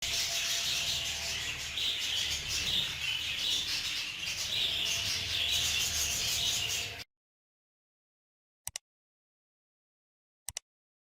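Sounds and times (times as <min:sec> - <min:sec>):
budgerigars chattering and chirping: 0:00.0 - 0:07.0.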